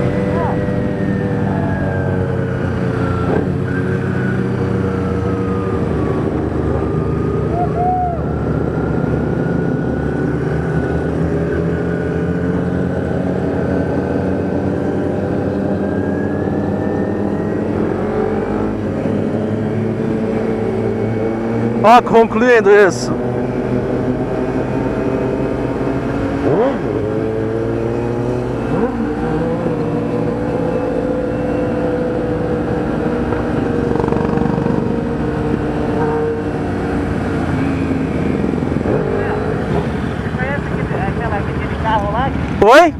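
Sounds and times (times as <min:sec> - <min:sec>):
motorcycle engine running: 0:32.0 - 0:42.8.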